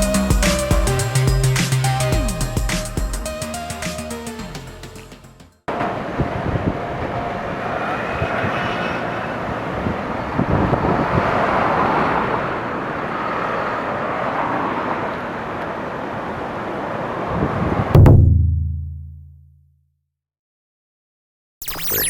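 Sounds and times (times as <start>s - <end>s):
steady rushing noise: 5.7s - 17.9s.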